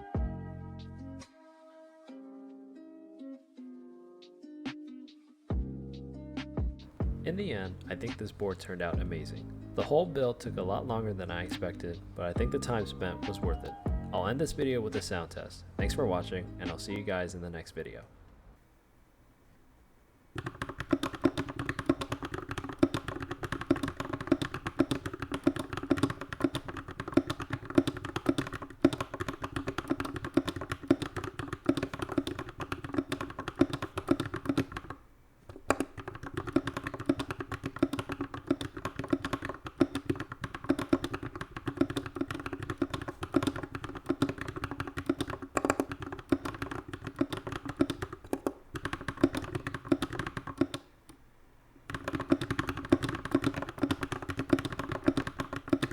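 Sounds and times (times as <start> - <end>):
mechanical keyboard key clacks: 20.4 - 50.8, 51.9 - 55.9.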